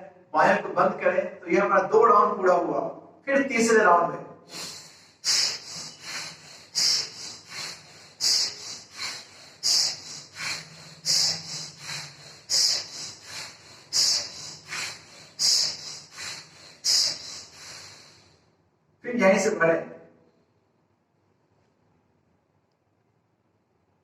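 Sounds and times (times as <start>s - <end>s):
forceful breathing through nose: 4.5s - 18.6s.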